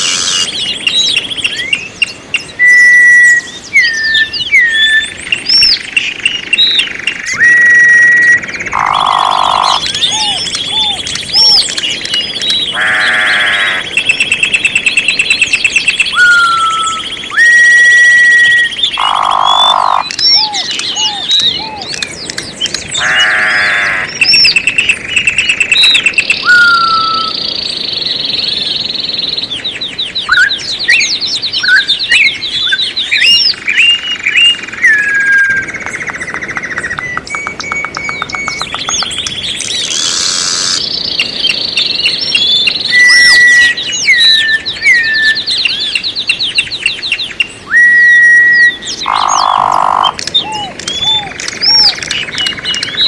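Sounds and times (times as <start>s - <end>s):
songbirds singing and calling: 0.0s - 53.0s.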